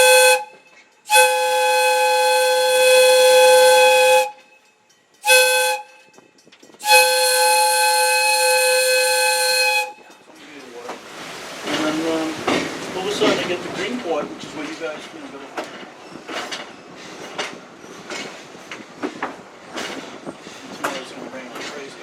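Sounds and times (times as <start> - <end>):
steam locomotive whistle blasts: 0.0 - 4.6, 5.2 - 6.2, 6.8 - 10.1.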